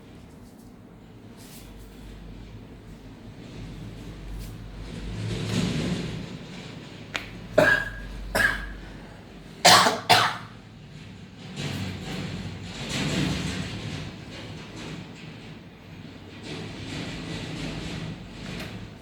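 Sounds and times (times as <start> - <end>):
man coughing: 7.6 - 9.0, 9.6 - 10.5.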